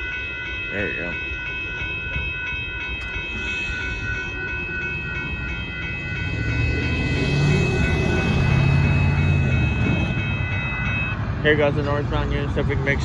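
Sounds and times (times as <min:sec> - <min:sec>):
freight train rumble: 0:00.0 - 0:13.0
high-pitched ringing: 0:00.0 - 0:13.0.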